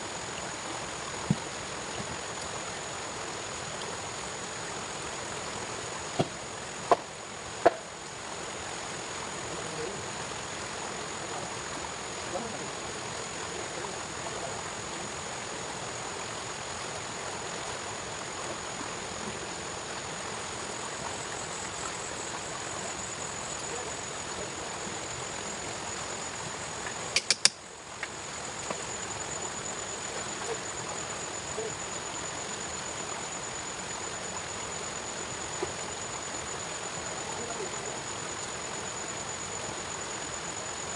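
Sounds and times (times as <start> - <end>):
high insect drone: 0.0 - 40.9
rushing like flowing water: 0.0 - 40.9
sharp clicks: 27.1 - 27.6.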